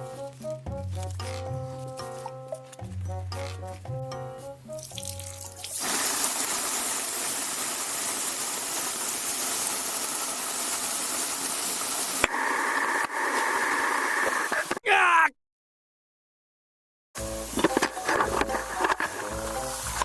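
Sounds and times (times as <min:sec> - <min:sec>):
background music: 0:00.0 - 0:05.8, 0:17.2 - 0:20.0
water spraying from leaking pipe: 0:04.8 - 0:12.3, 0:17.2 - 0:20.0.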